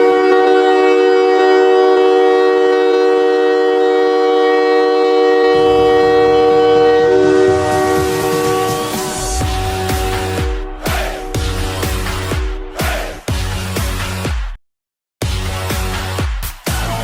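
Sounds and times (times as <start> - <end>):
goal horn blowing: 0.0 - 14.2
low rumbling noise: 5.4 - 14.2.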